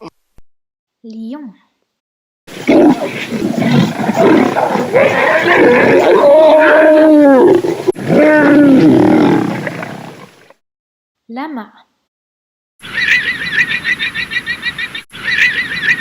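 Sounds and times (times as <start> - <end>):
lion roaring: 2.5 - 10.5.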